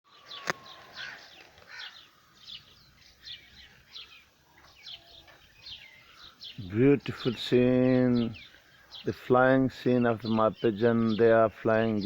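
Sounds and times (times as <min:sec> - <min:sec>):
birds chirping: 0:00.1 - 0:12.0.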